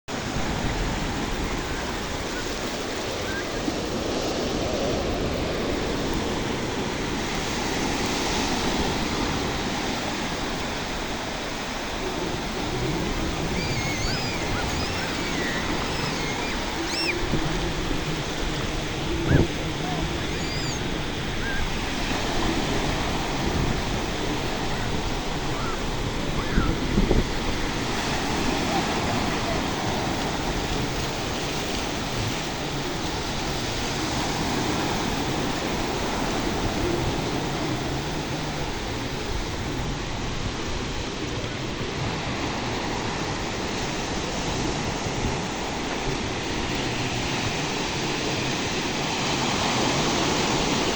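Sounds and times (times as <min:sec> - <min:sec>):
sea waves washing ashore: 0:00.1 - 0:50.9
faint short chirps: 0:13.6 - 0:17.2.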